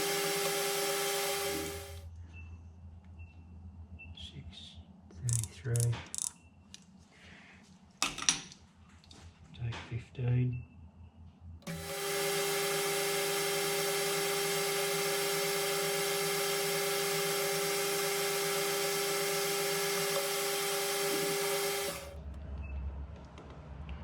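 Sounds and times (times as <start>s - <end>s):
metal lathe cutting with whine: 0.0s - 2.0s, 11.7s - 22.1s.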